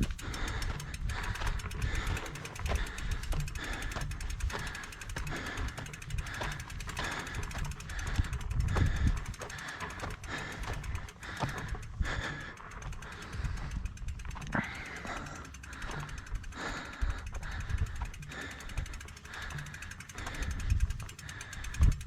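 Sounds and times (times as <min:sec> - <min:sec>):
low rumbling knocks from bike: 0:00.0 - 0:16.5
bike freehub ticking: 0:00.0 - 0:22.0
person breathing heavily: 0:00.0 - 0:22.0.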